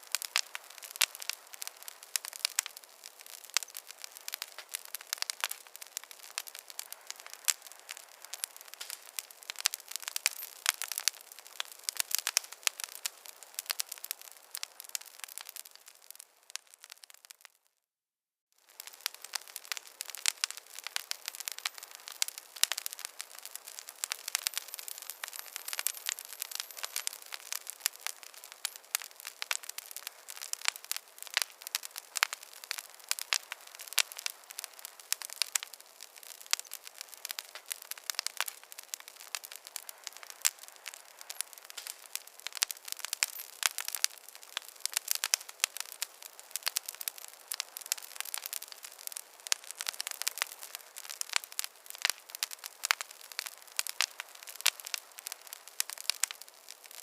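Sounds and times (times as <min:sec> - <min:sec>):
wood fire crackling: 0:00.0 - 0:17.6, 0:18.6 - 0:57.0.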